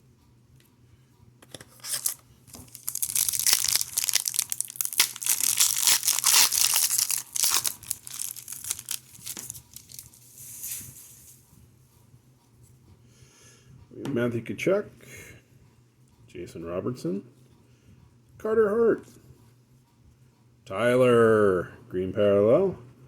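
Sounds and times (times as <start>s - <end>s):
card wrapper tearing and crinkling: 1.5s - 10.2s.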